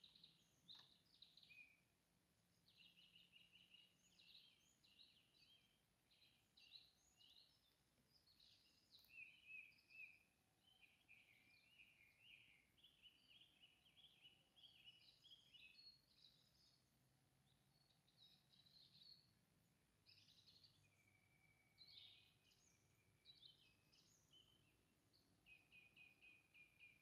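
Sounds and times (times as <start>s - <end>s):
songbirds chirping: 0.0s - 27.0s.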